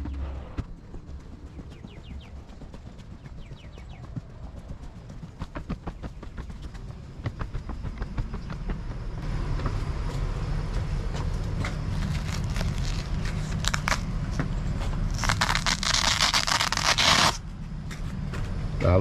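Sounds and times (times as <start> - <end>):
steady low rumble: 0.0 - 19.0
loud crackling rip: 11.9 - 14.1, 15.1 - 17.4.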